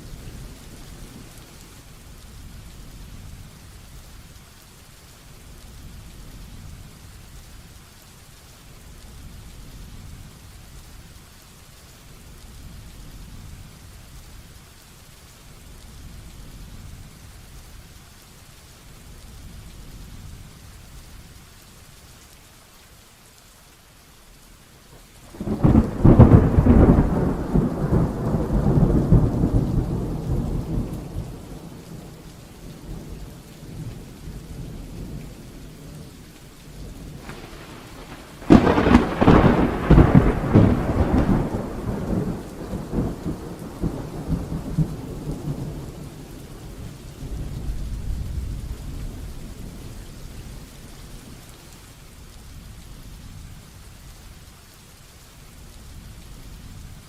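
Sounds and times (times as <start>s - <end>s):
heavy rain falling: 0.0s - 57.0s
thunderclaps rumbling: 25.2s - 36.1s, 36.7s - 51.4s.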